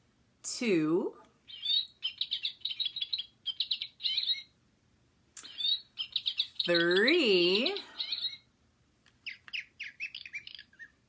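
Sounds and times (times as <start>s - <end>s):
high twittering chirps: 1.5s - 4.6s, 5.4s - 8.5s, 9.2s - 11.0s.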